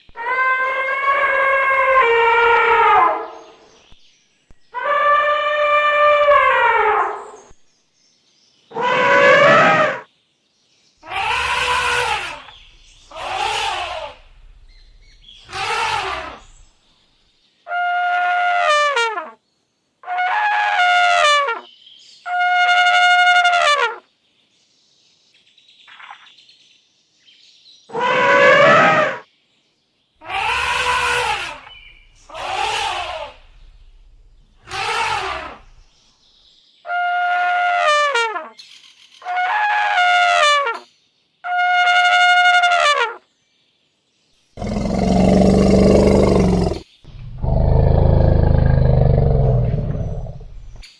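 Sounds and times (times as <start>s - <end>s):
elephants trumpeting: 8.7s - 10.0s, 11.1s - 16.6s, 27.9s - 29.2s, 30.3s - 35.8s, 44.6s - 50.8s.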